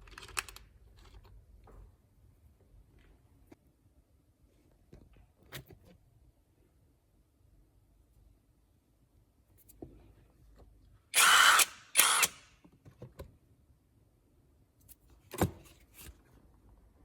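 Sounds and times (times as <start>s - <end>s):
impact driver running: 11.2s - 12.4s.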